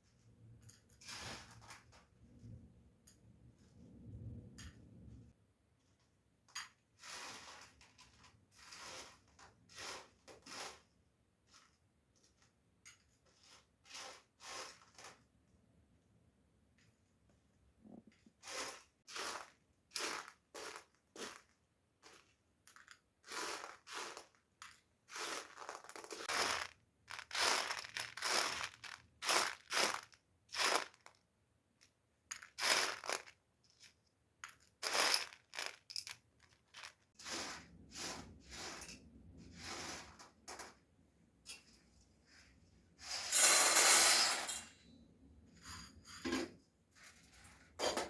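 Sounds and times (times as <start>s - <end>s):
crunching strokes: 25.1s - 31.2s.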